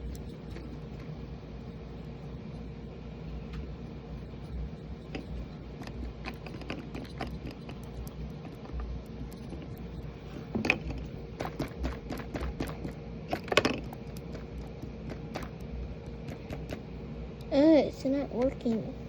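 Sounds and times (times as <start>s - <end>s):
low hum: 0.0s - 19.0s
small objects clicking: 5.1s - 16.9s.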